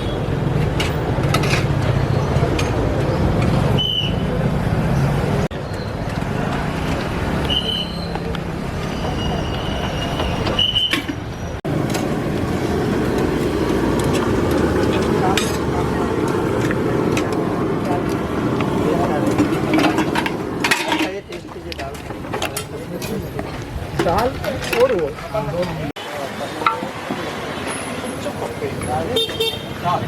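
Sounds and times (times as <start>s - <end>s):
street traffic noise: 0.0s - 30.0s.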